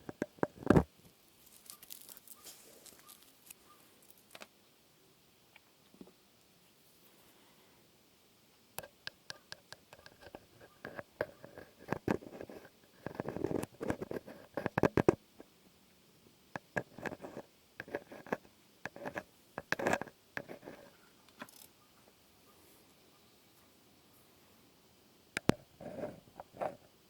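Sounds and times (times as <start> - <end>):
sharp taps clicks and scratches: 8.8 - 15.2, 16.6 - 20.8.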